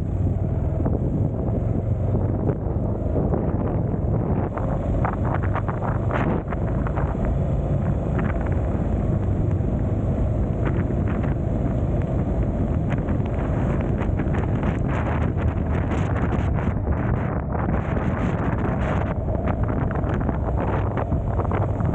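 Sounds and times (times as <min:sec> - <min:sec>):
vehicle running noise: 0:00.0 - 0:21.9
wind buffeting microphone: 0:00.0 - 0:21.9.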